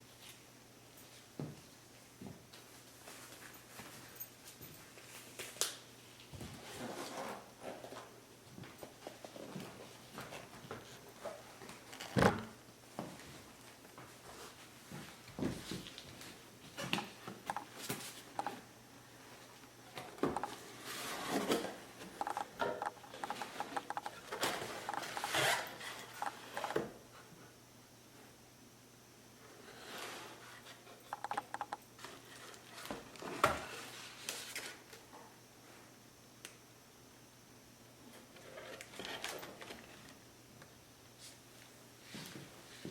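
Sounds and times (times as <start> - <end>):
small clicks: 22.2 - 24.2, 31.1 - 31.8.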